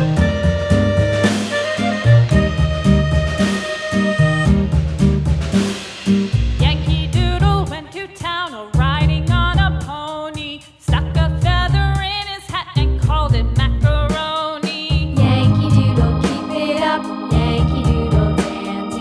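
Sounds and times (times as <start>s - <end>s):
background music with bass and melody: 0.0s - 7.7s, 12.8s - 14.3s, 14.9s - 19.0s.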